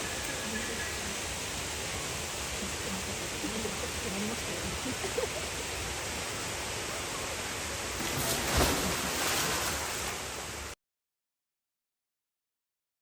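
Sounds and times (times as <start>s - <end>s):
rushing water: 0.0s - 10.8s
water splash: 7.9s - 10.5s.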